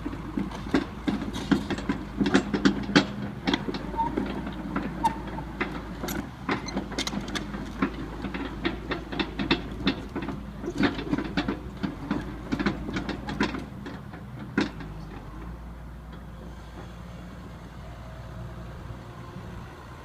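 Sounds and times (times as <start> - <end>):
excavator diesel engine: 0.0 - 20.0
metal clanks and knocks: 0.3 - 16.2.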